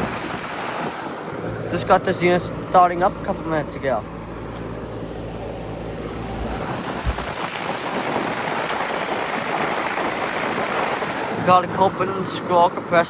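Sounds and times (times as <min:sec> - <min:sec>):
fan air rush: 0:00.0 - 0:13.0
compressor low hum: 0:02.6 - 0:08.2.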